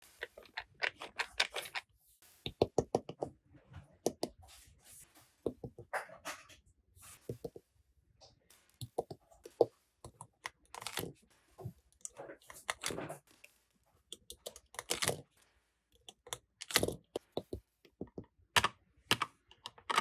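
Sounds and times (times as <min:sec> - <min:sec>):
plastic toy pieces clicking: 0:00.2 - 0:01.8, 0:10.1 - 0:11.1, 0:14.2 - 0:15.2, 0:16.0 - 0:17.5, 0:18.6 - 0:20.0.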